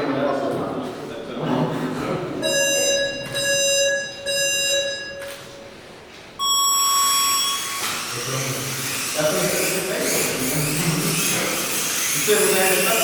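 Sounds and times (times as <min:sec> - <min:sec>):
electronic race start beeps: 0:02.4 - 0:05.5, 0:06.4 - 0:08.3.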